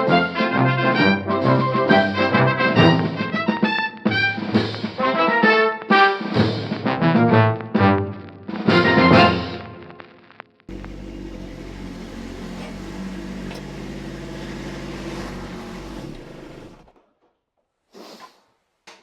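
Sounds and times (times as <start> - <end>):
tractor diesel engine running: 10.7 - 16.9.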